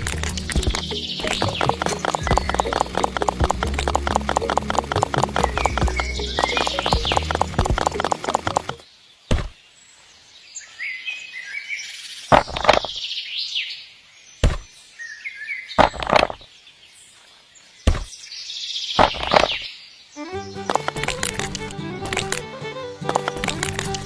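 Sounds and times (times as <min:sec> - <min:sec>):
birds chirping: 0:00.0 - 0:24.0
loud sharp thuds: 0:09.3 - 0:09.6, 0:14.4 - 0:14.7, 0:17.9 - 0:18.1.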